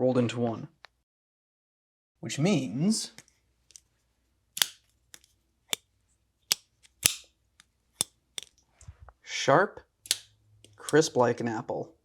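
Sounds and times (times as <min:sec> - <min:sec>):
folding knife clicking open and shut: 0:04.6 - 0:05.3, 0:06.5 - 0:07.3, 0:10.1 - 0:11.1.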